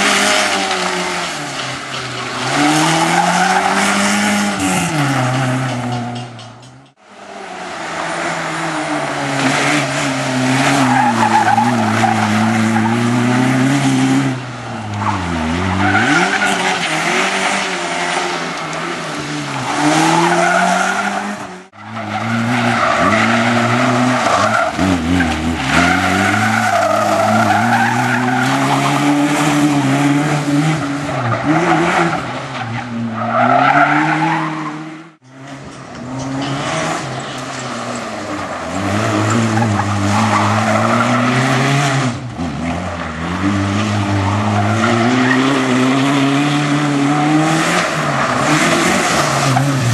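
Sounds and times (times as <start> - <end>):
rally car engine revving hard: 0.0 - 6.2, 8.1 - 37.6, 38.6 - 49.9
tyres sliding and squealing: 0.0 - 6.9, 7.9 - 34.8.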